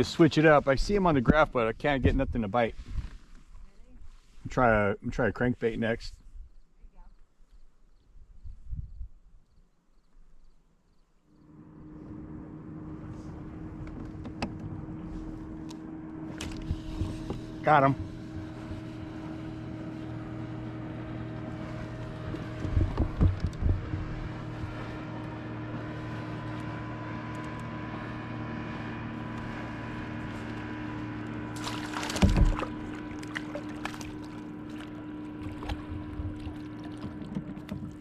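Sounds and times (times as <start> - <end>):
boat motor humming: 0.0 - 2.2, 11.2 - 38.0
knocks: 22.6 - 24.1
loud splash: 31.5 - 37.1.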